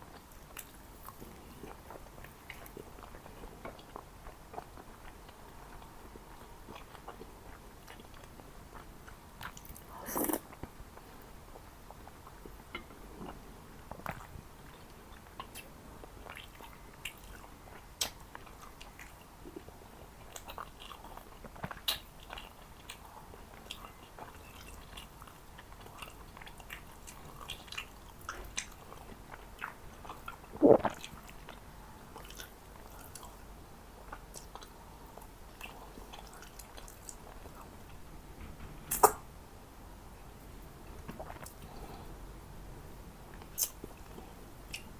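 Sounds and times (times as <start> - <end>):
wet mouth sounds: 9.5 - 10.6, 29.6 - 31.4, 38.9 - 39.2, 43.4 - 44.9
close chewing and biting: 11.9 - 33.4, 34.1 - 38.0.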